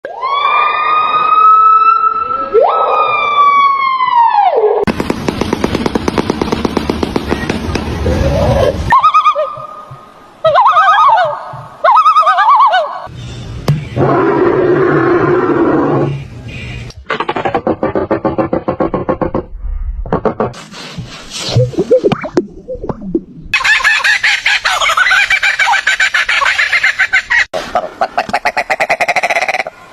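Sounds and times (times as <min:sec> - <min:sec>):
chickens clucking and cackling: 0:23.6 - 0:29.7.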